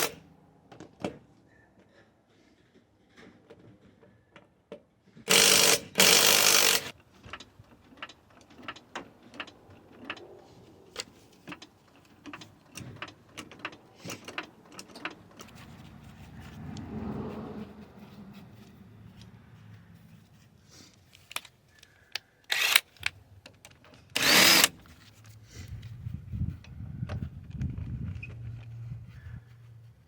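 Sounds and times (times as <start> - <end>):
sharp metallic clicks: 5.3 - 10.2, 21.1 - 24.9.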